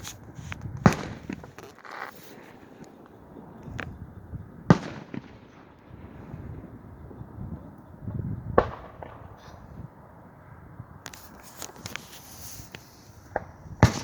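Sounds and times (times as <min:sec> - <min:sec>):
firework bangs: 0:00.0 - 0:03.9, 0:04.6 - 0:06.9, 0:08.1 - 0:09.9, 0:11.3 - 0:14.0
background noise: 0:00.0 - 0:14.0.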